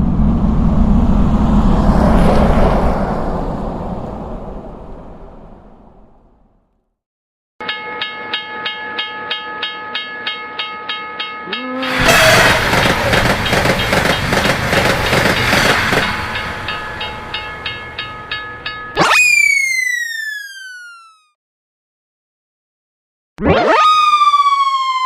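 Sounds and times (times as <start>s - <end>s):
train rushing past: 0.0s - 6.3s, 11.8s - 19.0s
railroad crossing bell ringing: 7.6s - 19.1s
train horn: 11.5s - 13.6s.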